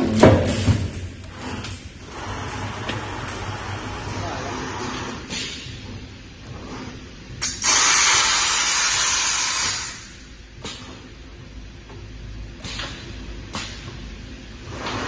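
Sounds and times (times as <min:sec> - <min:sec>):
low machine hum: 0:00.0 - 0:07.5
loud hiss of air: 0:07.4 - 0:10.3.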